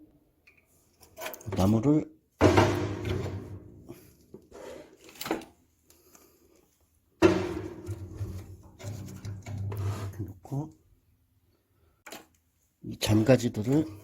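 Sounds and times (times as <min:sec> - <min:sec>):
loud wooden clunk: 0:02.4 - 0:03.8, 0:07.2 - 0:09.6.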